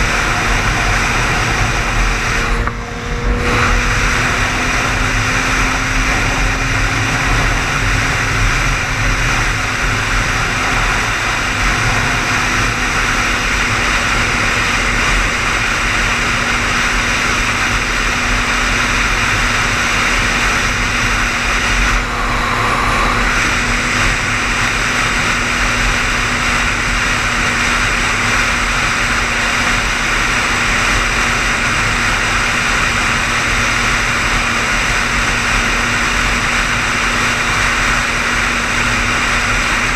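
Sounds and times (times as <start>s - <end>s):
low engine hum: 0.0s - 39.9s
tyre and road noise: 0.0s - 39.9s.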